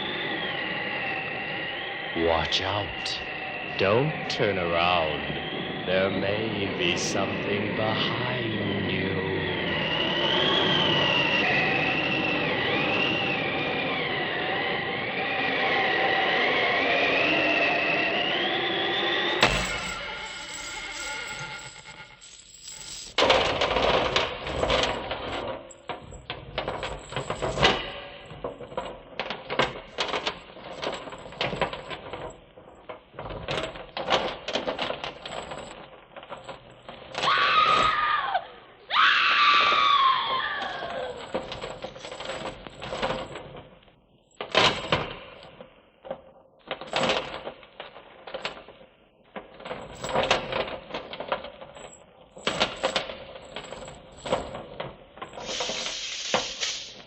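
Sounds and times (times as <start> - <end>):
metallic clinking and rattling: 19.4 - 37.2, 41.0 - 45.6, 49.6 - 56.0
loud screams falling in pitch: 37.2 - 41.1.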